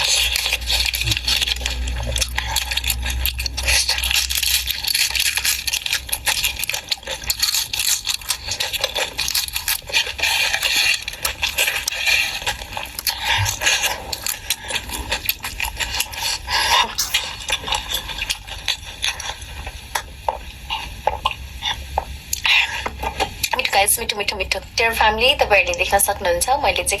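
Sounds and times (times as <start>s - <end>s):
chewing and crunching: 0.0s - 16.4s.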